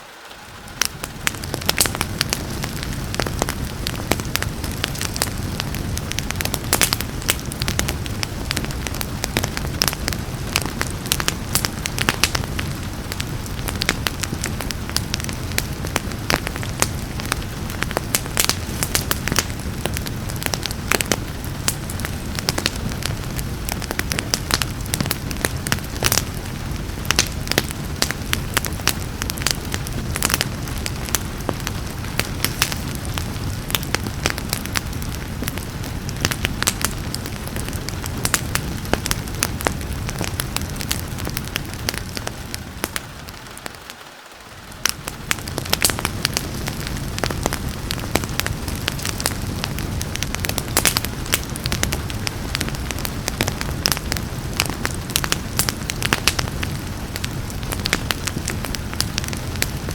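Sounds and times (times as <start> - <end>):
fire crackling and popping: 0.0 - 59.9
low fire rumble: 0.0 - 59.9
rain hiss: 0.0 - 59.9.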